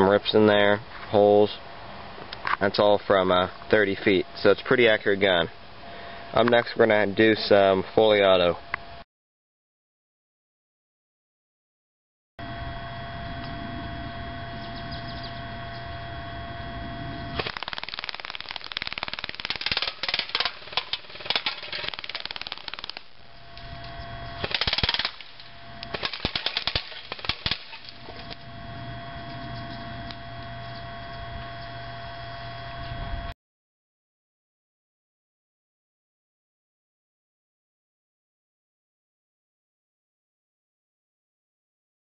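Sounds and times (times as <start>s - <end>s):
steady hum: 12.4s - 33.3s
airsoft rifle firing bursts: 17.4s - 23.2s, 24.4s - 27.9s.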